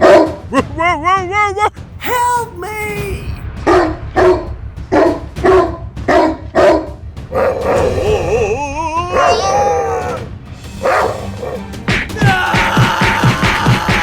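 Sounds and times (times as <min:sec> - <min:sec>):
dog barking: 0:00.0 - 0:00.4, 0:05.0 - 0:07.6, 0:10.8 - 0:11.7.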